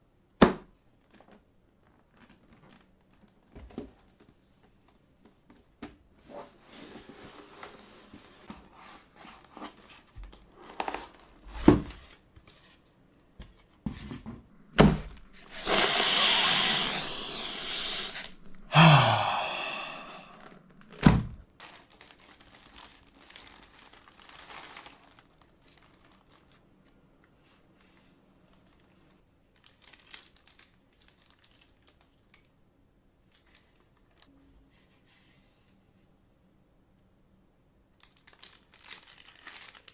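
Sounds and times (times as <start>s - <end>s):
packaging crinkling: 1.0s - 3.5s, 21.6s - 27.0s, 27.9s - 32.5s, 38.0s - 39.9s
cardboard box thunks: 10.8s - 12.2s
packaging being pulled apart: 15.2s - 18.6s, 21.6s - 26.6s, 38.0s - 39.9s.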